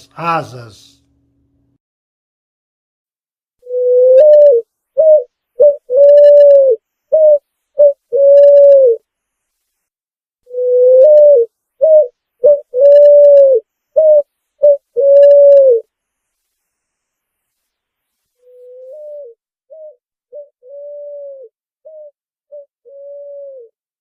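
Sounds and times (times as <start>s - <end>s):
pigeon cooing: 3.6s - 9.0s, 10.5s - 15.8s, 18.6s - 23.7s.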